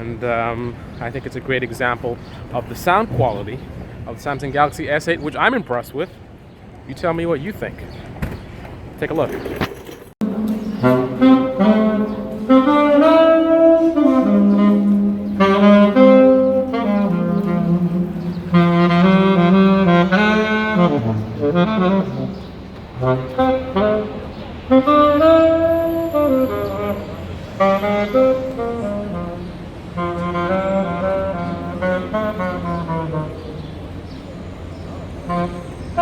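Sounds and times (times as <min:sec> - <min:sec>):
saxophone melody: 0:10.2 - 0:34.0, 0:35.0 - 0:36.0.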